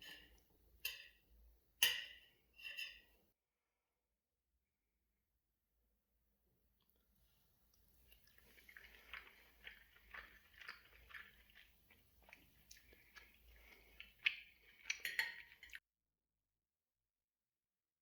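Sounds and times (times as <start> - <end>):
person chewing crunchy food: 8.0 - 15.8.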